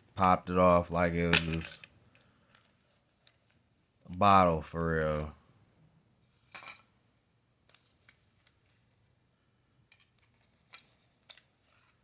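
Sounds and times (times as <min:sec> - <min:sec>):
plastic package clicking and rustling: 0:09.9 - 0:12.0.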